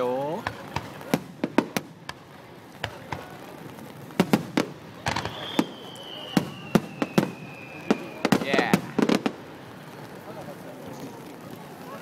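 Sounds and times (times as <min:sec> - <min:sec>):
fireworks cracks and bangs: 0:00.0 - 0:12.0
falling firework whistle: 0:04.6 - 0:09.2.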